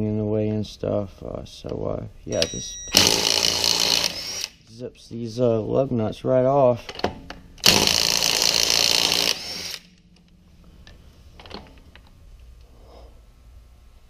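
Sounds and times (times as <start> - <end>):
cordless impact tool spinning: 2.9 - 4.6, 7.6 - 10.0.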